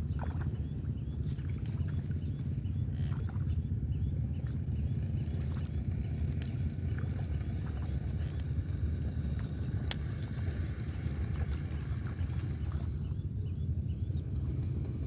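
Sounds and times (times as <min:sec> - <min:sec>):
wind buffeting microphone: 0:00.0 - 0:15.0
faint ticks: 0:09.4 - 0:10.3.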